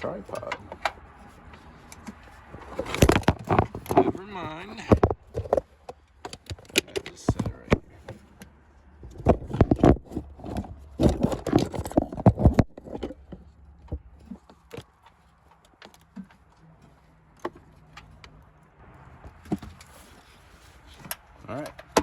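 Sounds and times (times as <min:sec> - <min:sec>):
tripod knocks and rattles: 0:02.0 - 0:08.2.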